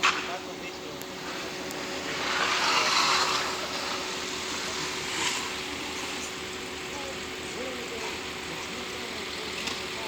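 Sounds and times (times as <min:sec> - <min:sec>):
engine humming steadily: 0:00.0 - 0:10.0
hissing rush: 0:01.2 - 0:07.5.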